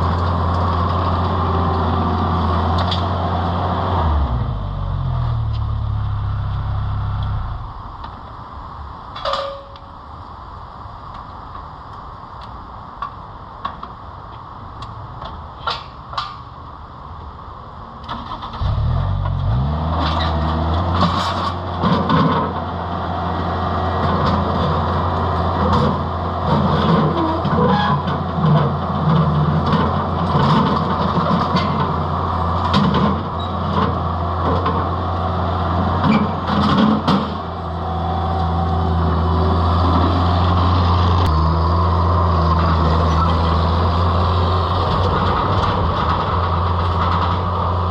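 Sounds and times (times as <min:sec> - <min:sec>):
engine cranking and running: 0:18.0 - 0:22.1
metal clanks and knocks: 0:20.0 - 0:22.7.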